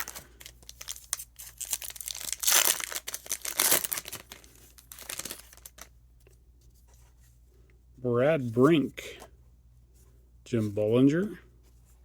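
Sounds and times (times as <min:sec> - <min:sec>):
wrapper tearing and crinkling: 0:00.0 - 0:05.9.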